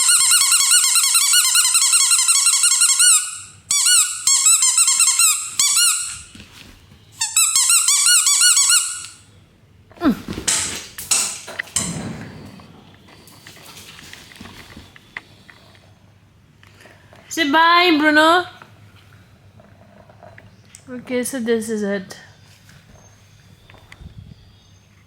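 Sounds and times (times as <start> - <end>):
toy ball warbling chirps: 0.0 - 6.1, 7.2 - 9.2
scuffling: 6.2 - 7.2.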